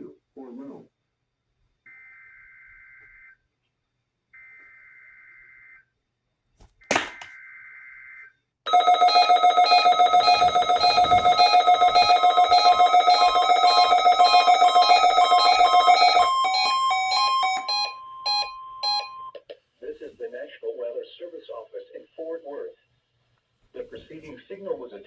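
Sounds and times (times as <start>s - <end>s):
pulsing multi-tone alarm: 7.5s - 19.4s.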